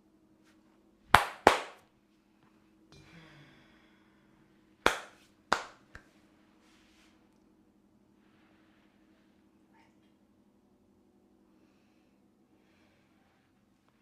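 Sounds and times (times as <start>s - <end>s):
sharp hand strikes on head: 1.1s - 1.8s.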